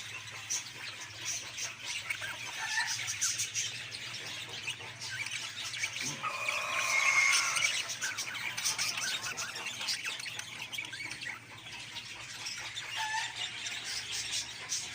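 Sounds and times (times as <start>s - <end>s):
budgerigars chirping: 0.0s - 14.9s
loud warbling call: 6.0s - 8.2s.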